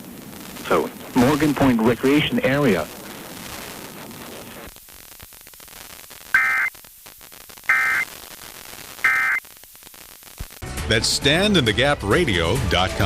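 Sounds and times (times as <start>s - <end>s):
radio static hiss: 0.0s - 10.6s
shrill digital data bursts: 6.3s - 6.7s, 7.7s - 8.1s, 9.0s - 9.4s.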